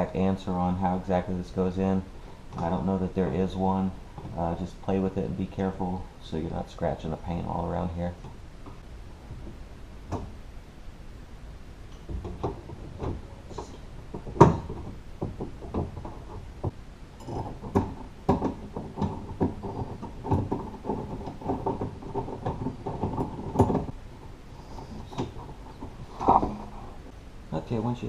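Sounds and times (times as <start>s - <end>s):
clicks and rattles: 11.9s - 24.0s.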